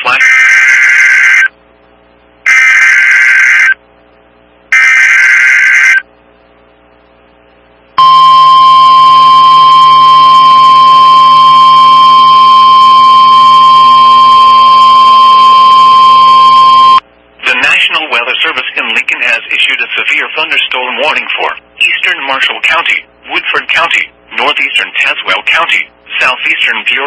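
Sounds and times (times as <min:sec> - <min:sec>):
steady warning alarm tone: 0:00.0 - 0:01.5, 0:02.5 - 0:03.8, 0:04.7 - 0:06.1, 0:08.0 - 0:17.0
rasping digital data bursts: 0:02.5 - 0:03.8, 0:04.8 - 0:06.0.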